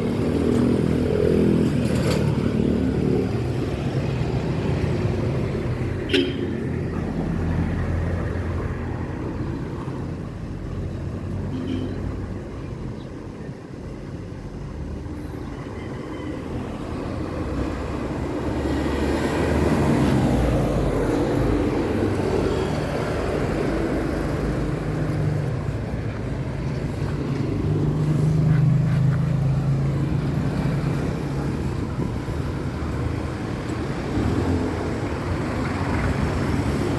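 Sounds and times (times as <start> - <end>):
low rumble of motor vehicles: 0.0 - 36.9.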